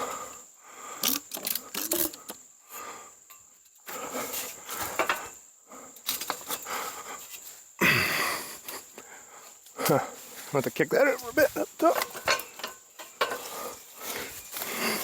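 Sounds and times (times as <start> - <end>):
man breathing heavily: 0.0 - 1.2, 2.2 - 10.5, 13.1 - 15.0
metal ladder stand rattling: 11.5 - 13.8.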